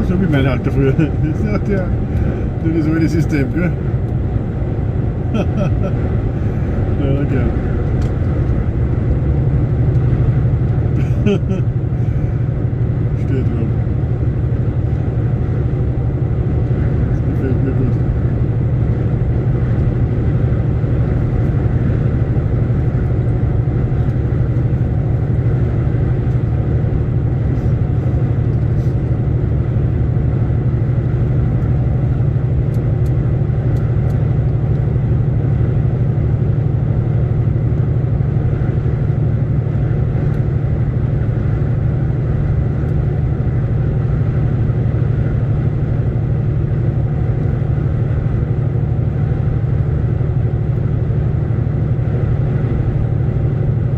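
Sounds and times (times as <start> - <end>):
lorry engine and road drone: 0.0 - 53.9.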